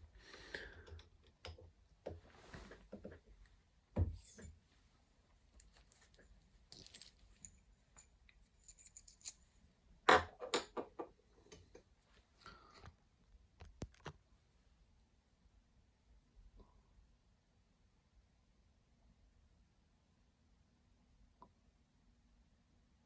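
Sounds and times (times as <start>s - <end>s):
small metal parts clicking: 5.6s - 9.6s
metal parts scraping: 5.8s - 7.6s.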